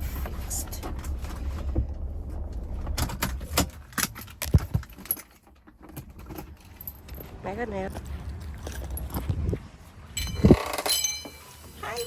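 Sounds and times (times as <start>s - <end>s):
low rumble: 0.0s - 5.2s
keys jingling: 3.9s - 7.4s, 10.2s - 11.4s.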